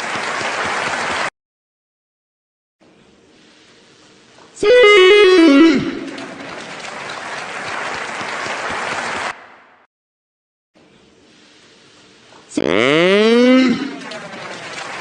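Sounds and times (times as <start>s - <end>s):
stadium crowd cheering and applauding: 0.0s - 1.3s, 5.2s - 9.9s, 13.5s - 15.0s.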